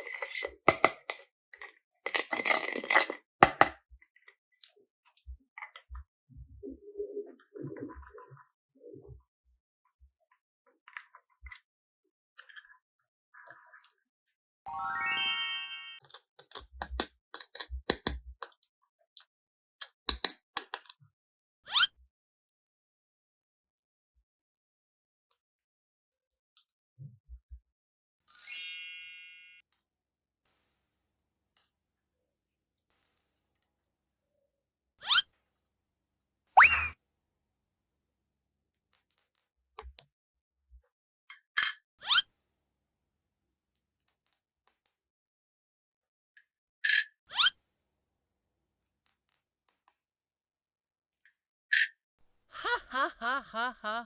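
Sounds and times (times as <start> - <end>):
crinkling handling noise: 0.0 - 3.7.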